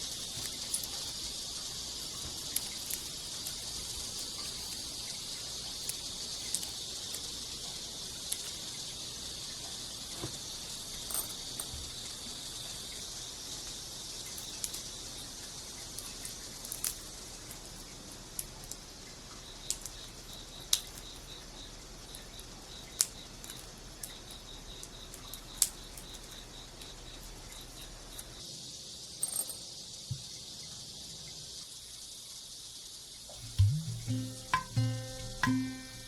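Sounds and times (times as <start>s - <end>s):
crickets chirping: 0.0s - 36.0s.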